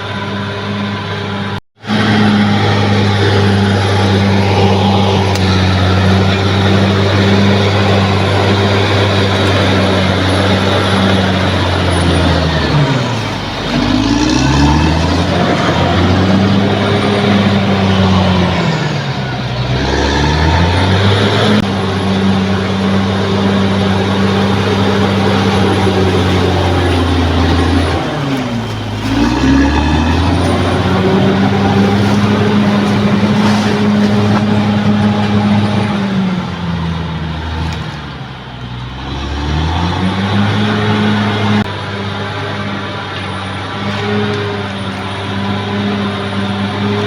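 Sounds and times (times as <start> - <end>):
bulldozer diesel engine revving: 0.0 - 47.0.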